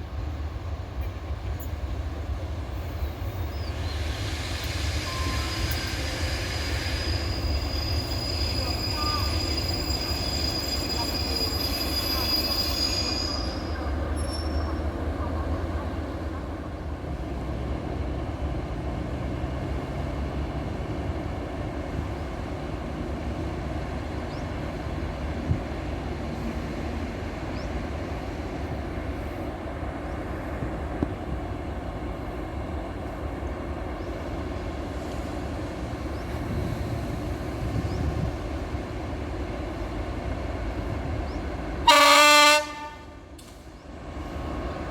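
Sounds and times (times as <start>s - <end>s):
diesel train rumbling: 0.0s - 44.9s
wheels squealing: 4.8s - 14.9s.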